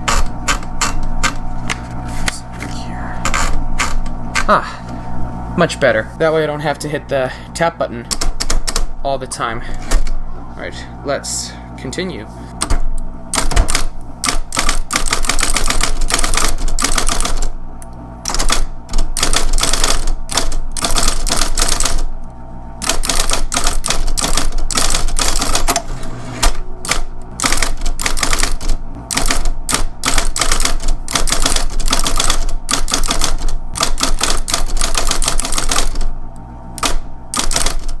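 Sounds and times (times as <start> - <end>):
typewriter motor hum: 0.0 - 5.1, 8.1 - 8.9, 12.6 - 38.0
typewriter keys clattering: 13.4 - 17.5, 18.3 - 22.0, 22.8 - 25.7, 26.9 - 36.0, 36.8 - 38.0.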